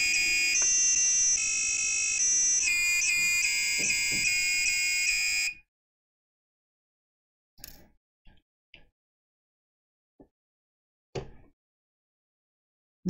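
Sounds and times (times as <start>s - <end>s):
electronic buzzer beeping a melody: 0.0s - 5.6s.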